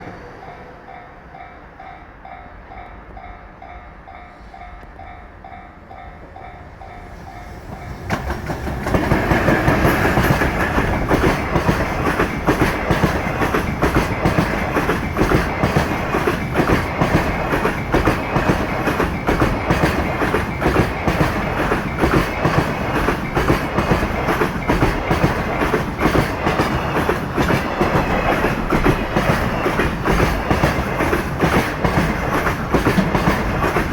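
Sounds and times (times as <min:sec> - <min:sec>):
electric locomotive passing: 0:00.0 - 0:33.9
wheels clacking over rail joints: 0:06.8 - 0:33.9.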